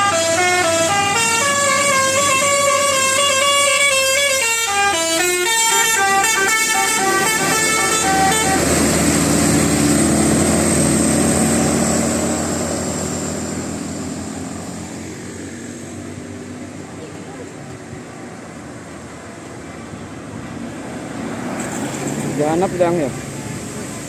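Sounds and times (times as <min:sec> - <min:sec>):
musical bus horn melody: 0:00.0 - 0:09.8
bus engine: 0:00.0 - 0:24.0
road noise: 0:00.0 - 0:24.0.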